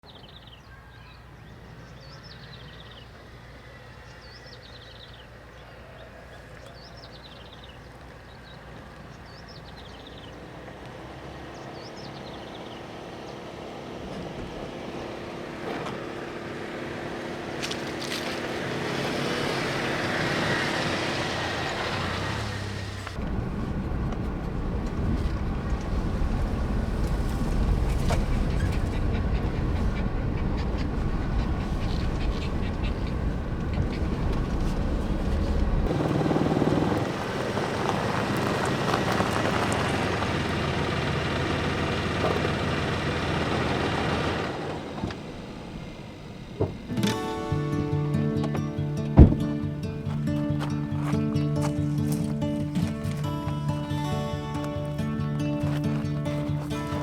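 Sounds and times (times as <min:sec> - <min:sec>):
birds chirping: 0:00.0 - 0:14.0, 0:25.3 - 0:44.5
vehicle approaching and passing: 0:01.4 - 0:57.0
low hum: 0:19.4 - 0:50.5
loud steady low rumble: 0:22.7 - 0:46.6.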